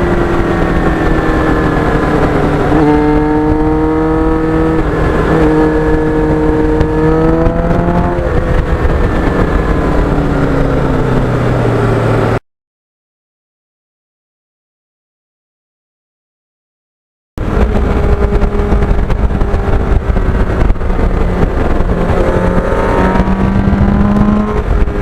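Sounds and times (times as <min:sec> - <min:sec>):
heavy wind noise: 0:00.0 - 0:12.4, 0:17.4 - 0:25.0
motorcycle engine running: 0:00.0 - 0:12.4, 0:17.4 - 0:25.0.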